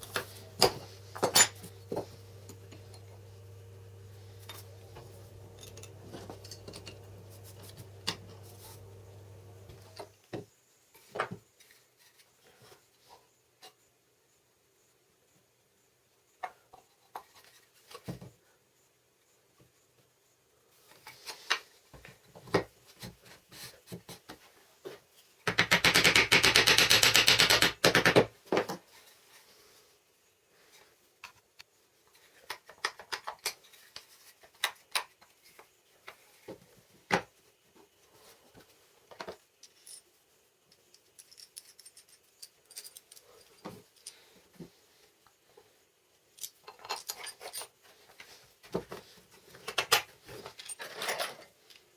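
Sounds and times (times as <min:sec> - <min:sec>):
light clicks and taps of tools: 0:00.0 - 0:10.4, 0:30.7 - 0:37.3.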